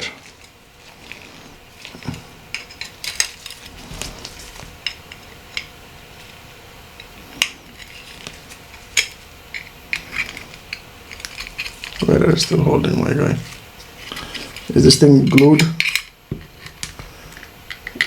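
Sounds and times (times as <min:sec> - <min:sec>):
small parts clicking and tapping: 0:14.4 - 0:18.0.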